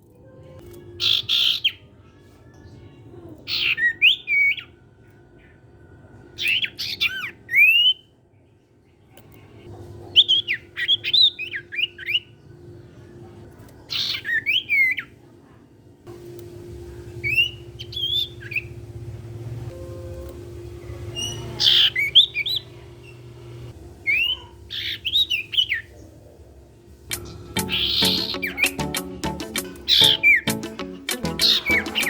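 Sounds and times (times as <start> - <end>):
faint steady hum: 15.2 - 28.0
songbird singing: 16.1 - 26.0, 27.1 - 32.0.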